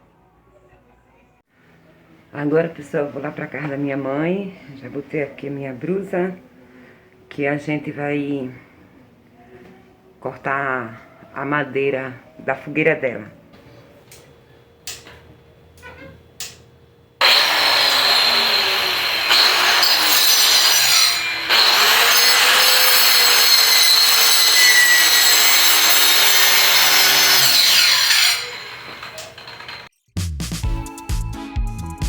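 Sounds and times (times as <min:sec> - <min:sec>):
circular saw cutting wood: 0:17.2 - 0:29.9.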